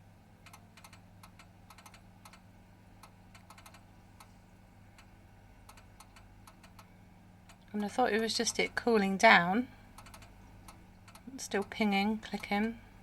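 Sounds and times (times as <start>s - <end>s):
low steady hum: 0.0s - 13.0s
sharp pinging clicks: 0.4s - 2.4s, 3.0s - 4.3s, 5.0s - 7.7s, 10.0s - 12.8s.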